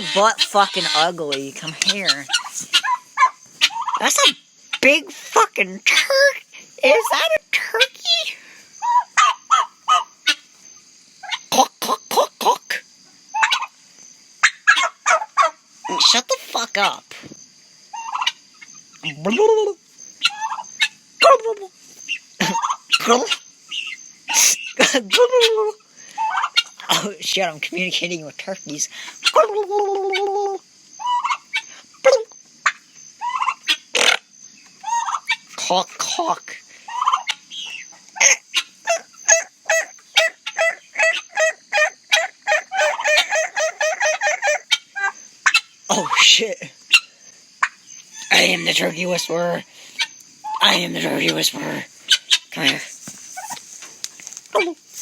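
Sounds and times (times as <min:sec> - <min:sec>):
fowl honking calls: 0:00.0 - 0:05.0, 0:08.8 - 0:10.5, 0:36.9 - 0:46.2
turkeys gobbling: 0:00.0 - 0:10.6, 0:11.2 - 0:13.8, 0:14.4 - 0:17.0, 0:17.9 - 0:27.1, 0:29.1 - 0:55.0.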